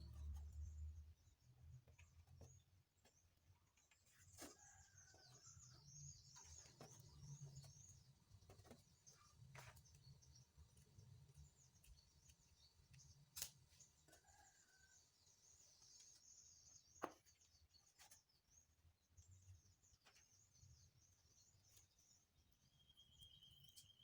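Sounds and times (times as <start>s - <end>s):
faint high chirping: 20.0s - 24.0s.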